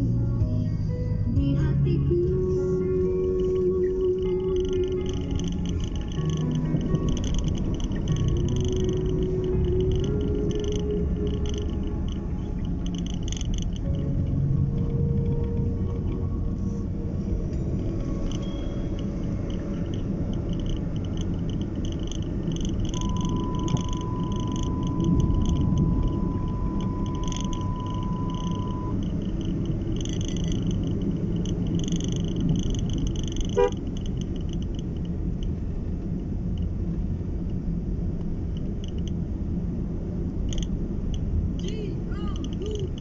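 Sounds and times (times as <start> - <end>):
car engine and road noise: 0.0 - 43.0
steady beep tone: 3.3 - 14.6, 15.2 - 32.8.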